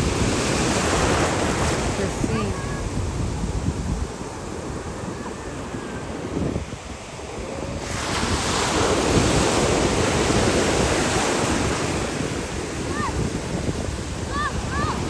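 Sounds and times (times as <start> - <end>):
ocean waves rushing: 0.0 - 15.0
wind buffeting microphone: 0.0 - 15.0.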